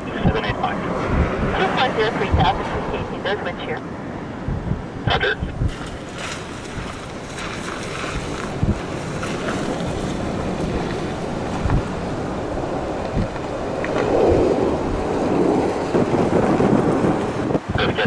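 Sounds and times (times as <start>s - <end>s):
wind buffeting microphone: 0.0s - 18.0s
low thumps: 4.4s - 5.9s.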